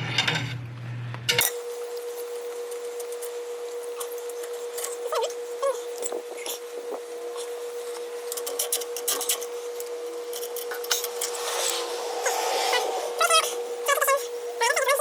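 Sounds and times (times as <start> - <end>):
steady hum: 10.4 - 14.2.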